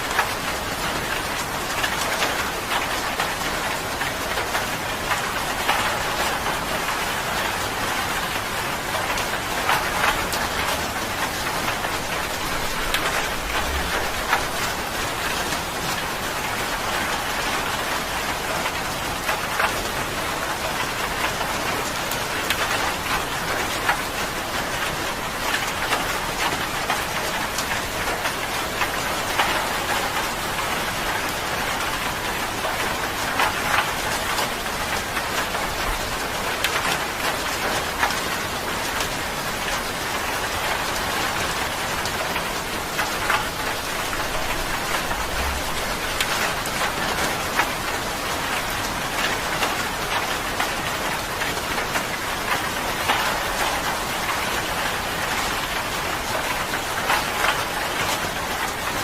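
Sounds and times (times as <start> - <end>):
rain pattering on a surface: 0.0 - 59.0.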